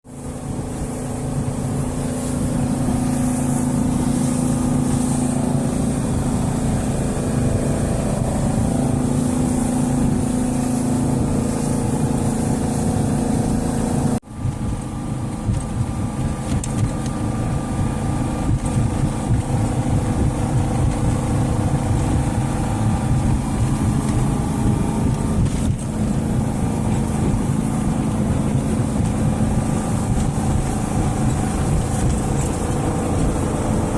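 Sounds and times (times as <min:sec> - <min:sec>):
boat engine running: 0:00.0 - 0:33.9.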